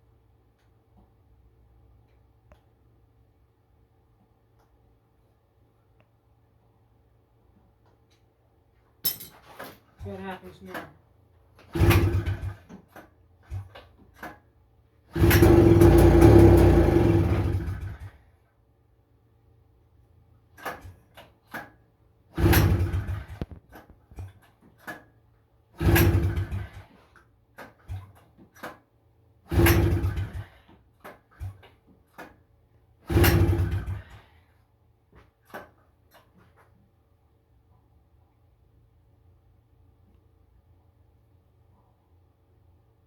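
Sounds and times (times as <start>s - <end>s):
recoil starter pull whirring: 15.1s - 18.2s, 33.0s - 34.4s.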